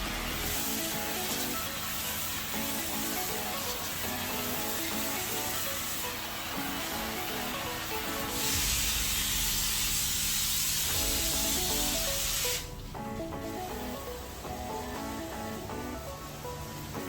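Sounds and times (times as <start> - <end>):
pressure washer spray hissing: 0.0 - 12.7
background music: 0.0 - 17.0.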